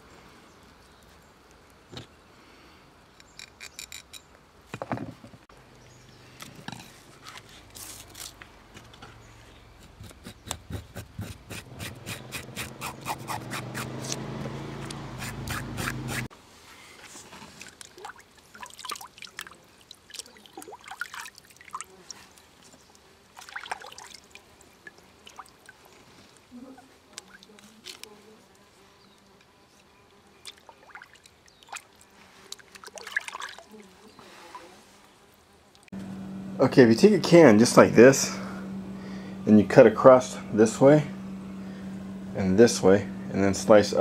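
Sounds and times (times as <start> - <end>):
scraping fish scales: 6.8 - 8.4
water running: 23.3 - 27.5.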